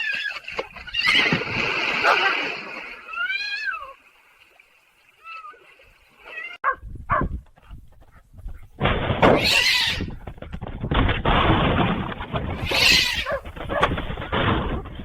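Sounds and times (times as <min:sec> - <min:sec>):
animal calling: 0:12.6 - 0:13.8.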